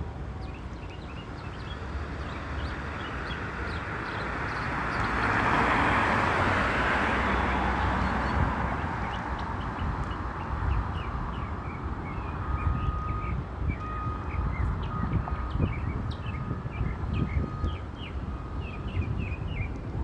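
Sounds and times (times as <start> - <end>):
low rumble of city traffic: 0.0 - 20.0
passing vehicle: 1.7 - 9.9.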